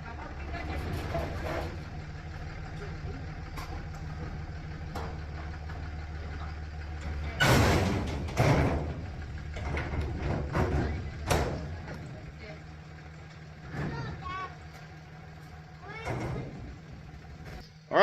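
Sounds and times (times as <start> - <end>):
pickup truck engine idling: 0.0 - 17.9
loud clattering crashes: 7.2 - 11.9.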